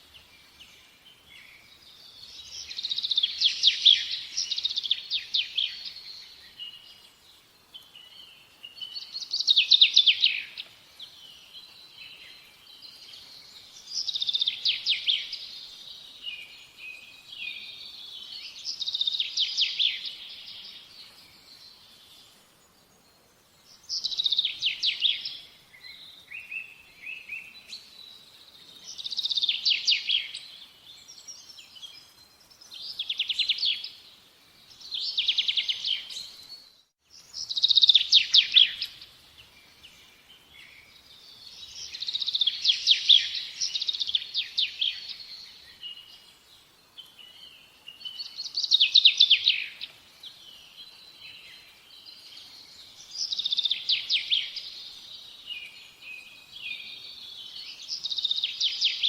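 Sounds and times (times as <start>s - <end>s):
songbird singing: 0.0s - 59.0s
soft bird twittering: 47.0s - 59.0s.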